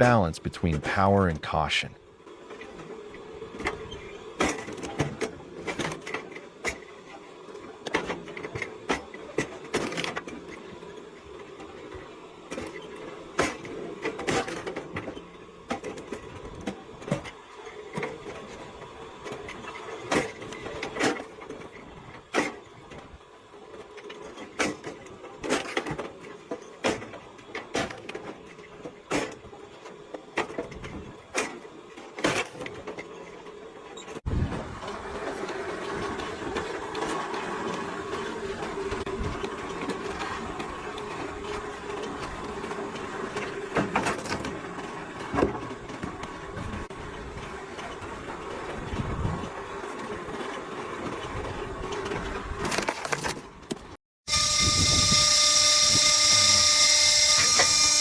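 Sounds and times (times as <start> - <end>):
log splitter motor humming: 54.3 - 58.0.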